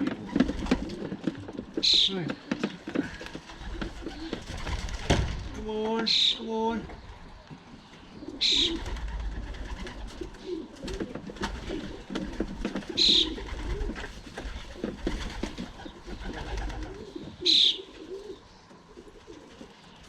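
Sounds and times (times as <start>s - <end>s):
pigeons cooing: 0.0s - 20.0s.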